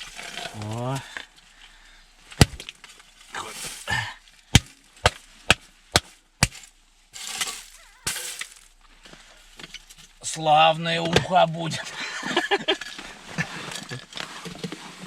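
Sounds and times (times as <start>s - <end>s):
rustling: 0.0s - 11.0s
wooden club striking fish: 4.5s - 6.7s.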